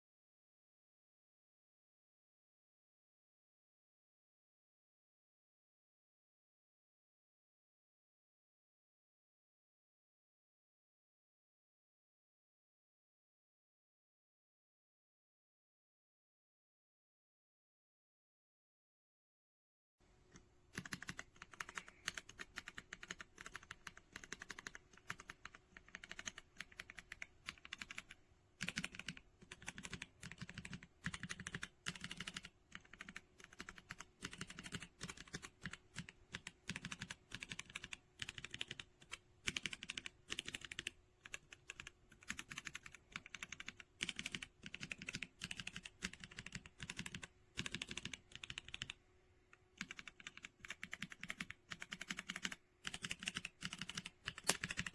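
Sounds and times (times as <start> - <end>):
faint steady hum: 20.0 - 54.9
soft mechanical keyboard typing: 20.3 - 54.9.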